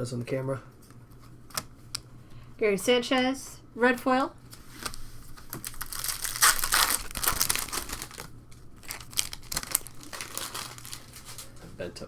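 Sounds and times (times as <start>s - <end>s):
foil wrapper tearing and crinkling: 4.8s - 11.5s.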